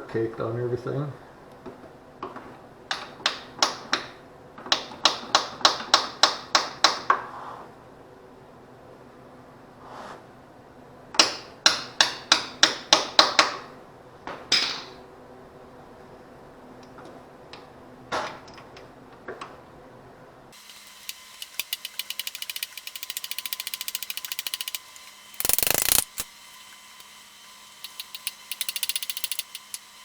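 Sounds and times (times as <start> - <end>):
socket ratchet clicking: 21.0 - 24.8, 25.4 - 26.3, 27.8 - 29.9.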